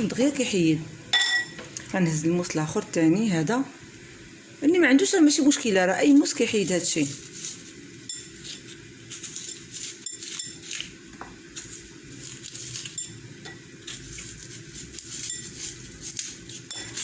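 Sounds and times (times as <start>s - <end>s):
knife scraping turnip flesh: 6.3s - 13.2s, 13.8s - 17.0s.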